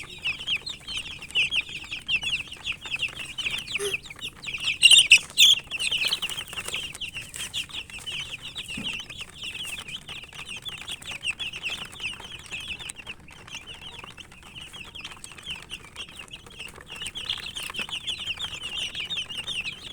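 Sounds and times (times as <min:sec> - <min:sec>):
chicks peeping: 0:00.0 - 0:19.9.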